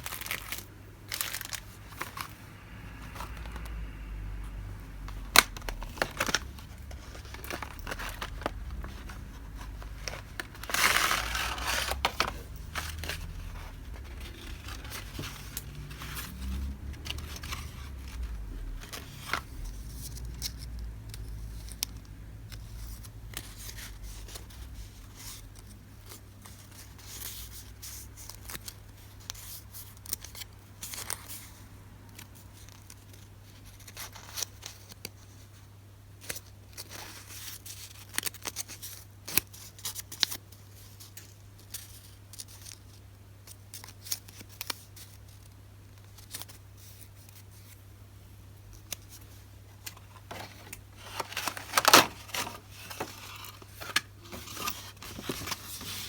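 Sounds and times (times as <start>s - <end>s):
packaging crinkling and rustling: 0.0s - 3.8s, 5.0s - 35.6s, 48.7s - 56.0s
paper tearing: 10.2s - 15.2s.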